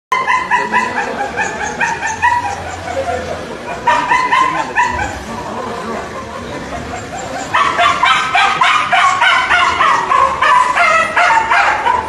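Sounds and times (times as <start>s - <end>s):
dog yelping: 0.1s - 5.3s, 6.2s - 12.0s.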